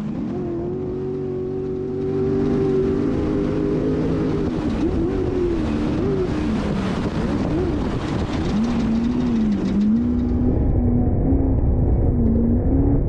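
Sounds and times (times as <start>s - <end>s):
engine running hard: 0.0s - 13.0s
steady rushing noise: 0.0s - 13.0s.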